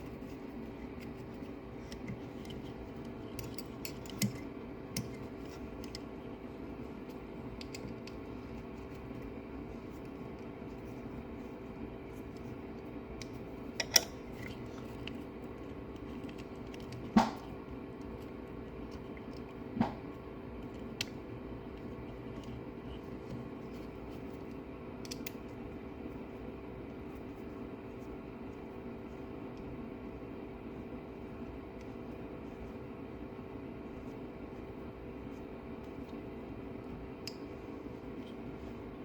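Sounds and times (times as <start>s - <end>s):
steady hum: 0.0s - 39.0s
metal clicks of tools and parts: 13.8s - 14.2s.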